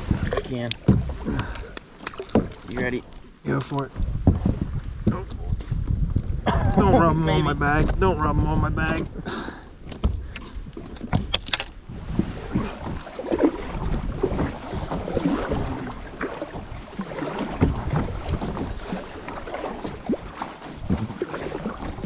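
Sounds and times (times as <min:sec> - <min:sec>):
water splashing: 0:00.0 - 0:05.2, 0:06.8 - 0:22.0
hollow bumps on plastic hull: 0:17.5 - 0:18.8.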